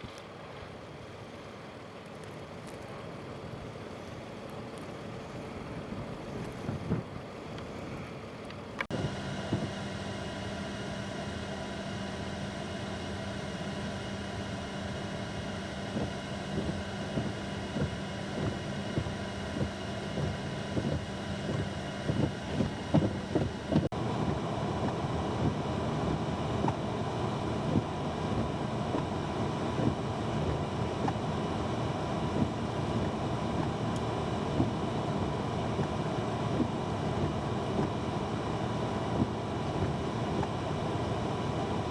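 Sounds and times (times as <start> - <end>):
blizzard wind gusting: 0.0 - 10.2
steady low hum: 0.0 - 41.9.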